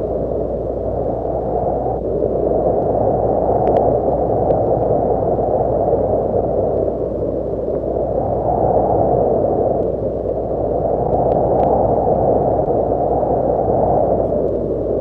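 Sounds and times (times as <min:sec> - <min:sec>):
low rush of wind: 0:00.0 - 0:15.0
faint ticks: 0:02.0 - 0:05.4, 0:09.7 - 0:11.9, 0:14.1 - 0:15.0.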